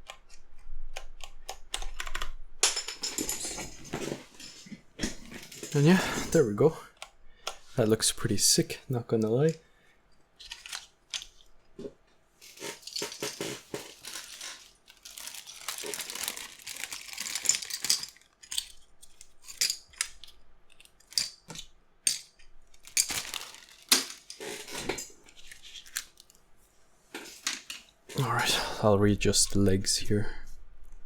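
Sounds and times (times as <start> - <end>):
rustling: 12.4 - 19.6.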